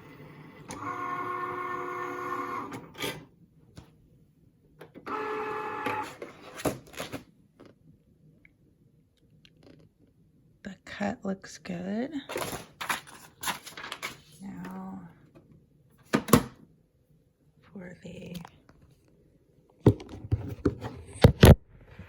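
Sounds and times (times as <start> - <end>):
cutting machine motors whining: 0.0 - 3.2, 5.0 - 6.2.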